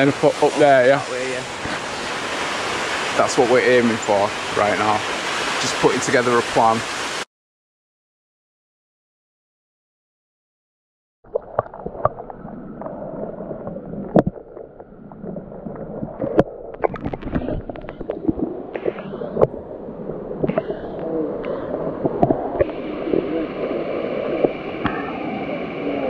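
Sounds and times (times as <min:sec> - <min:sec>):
rushing river water: 0:00.0 - 0:07.2, 0:15.3 - 0:26.0.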